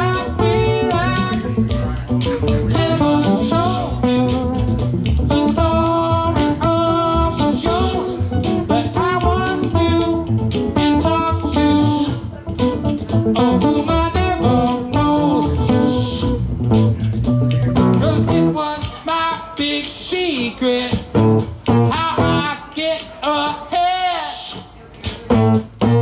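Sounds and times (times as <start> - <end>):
electric guitar lead lines: 0.0 - 18.7, 25.3 - 26.0
bass guitar: 0.0 - 23.3, 25.0 - 26.0
drums: 0.0 - 26.0.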